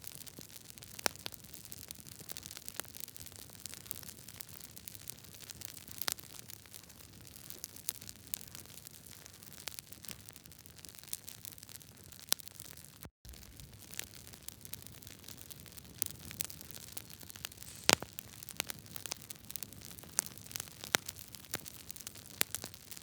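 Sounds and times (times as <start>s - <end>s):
wood fire crackling: 13.3s - 23.0s.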